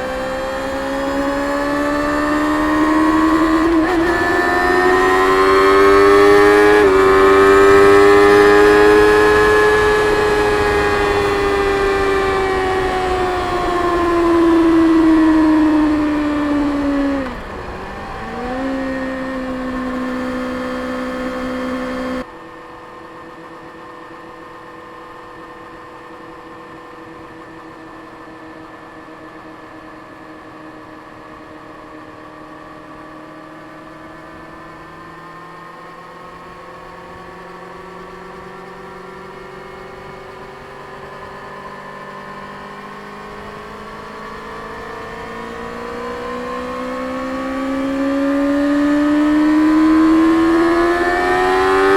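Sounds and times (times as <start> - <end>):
motorcycle engine running: 0.0 - 51.9.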